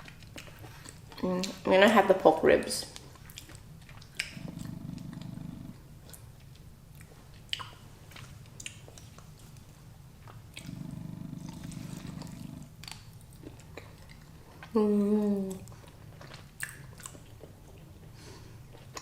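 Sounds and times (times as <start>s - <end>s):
chewing and biting: 0.0s - 1.6s, 2.9s - 14.8s, 15.5s - 19.0s
wet mouth clicks: 3.0s - 9.3s, 10.3s - 14.3s, 16.6s - 17.2s.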